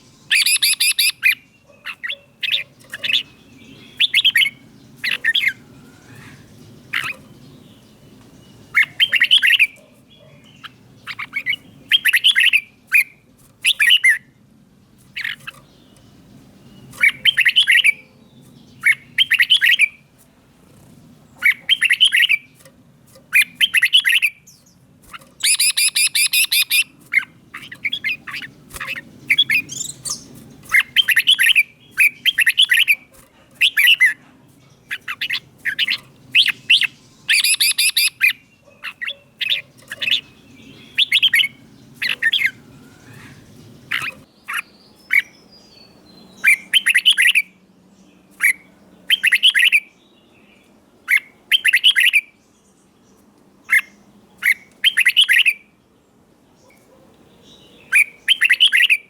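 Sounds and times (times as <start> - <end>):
bulbul singing: 0.0 - 55.8, 56.6 - 59.0.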